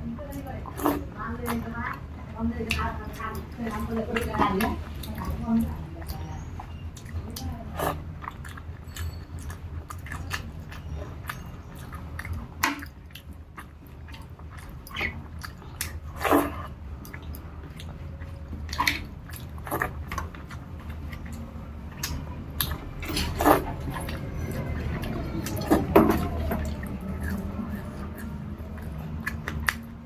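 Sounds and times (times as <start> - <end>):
steady low hum: 0.0 - 30.0
person chewing food: 0.3 - 30.0
mouth clicks and smacks: 6.0 - 30.0.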